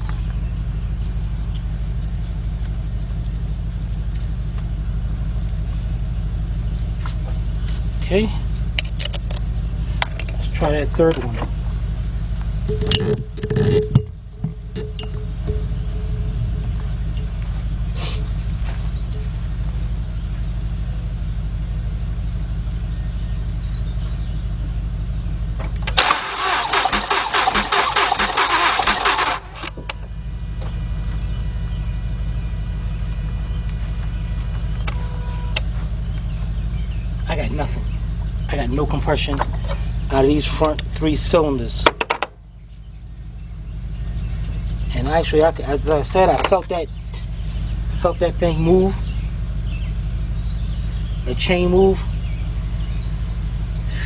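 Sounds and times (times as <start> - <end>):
low mechanical hum: 0.0 - 54.0
engine cranking on starter: 12.6 - 18.2, 25.6 - 30.1.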